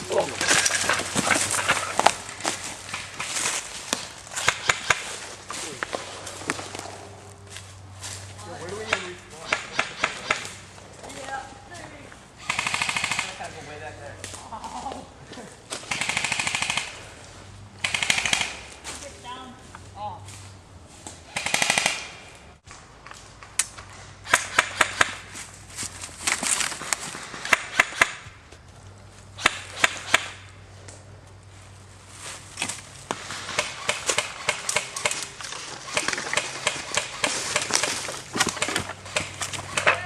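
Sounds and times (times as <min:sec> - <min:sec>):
rustling and crunching undergrowth: 0:00.0 - 0:40.0
sharp snaps and clicks: 0:23.1 - 0:25.1.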